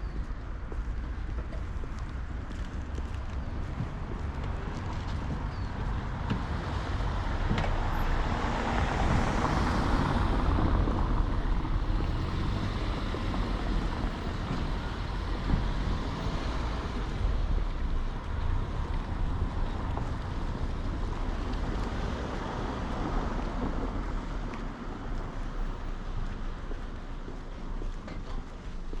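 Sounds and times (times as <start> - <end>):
low rumble of traffic: 0.0 - 29.0
car passing: 6.4 - 24.9.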